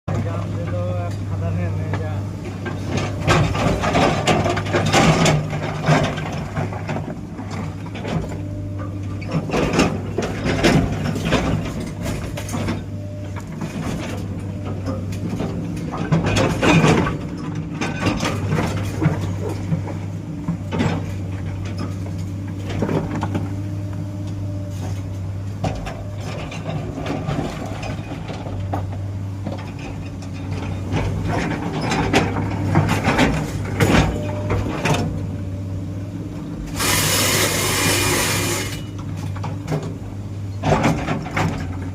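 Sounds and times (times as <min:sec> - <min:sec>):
diesel machine engine hum: 0:00.0 - 0:41.9
metallic clanks and knocks: 0:09.3 - 0:22.1, 0:25.6 - 0:35.1.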